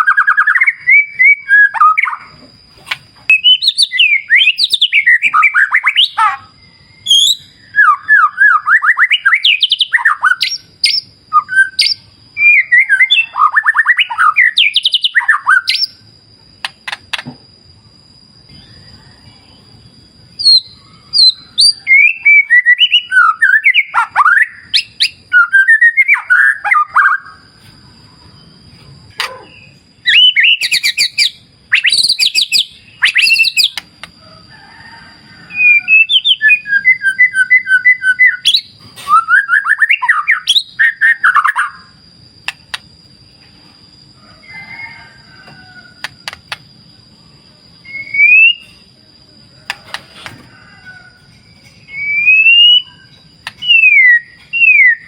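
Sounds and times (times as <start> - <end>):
bird singing whistled phrases: 0.0 - 2.3, 3.3 - 6.4, 7.0 - 16.0, 20.4 - 27.4, 29.2 - 33.8, 35.5 - 41.9, 47.8 - 48.8, 51.8 - 55.0.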